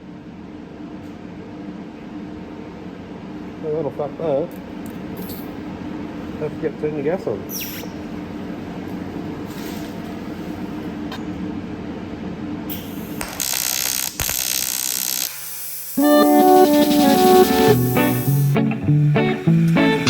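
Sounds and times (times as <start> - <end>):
welding arc buzzing: 12.7 - 20.0
music: 16.0 - 20.0.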